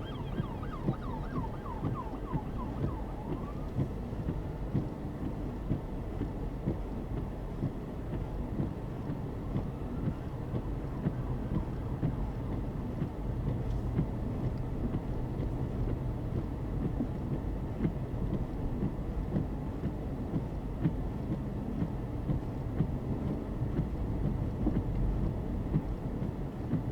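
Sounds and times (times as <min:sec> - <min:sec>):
road and tyre rumble: 0:00.0 - 0:26.9.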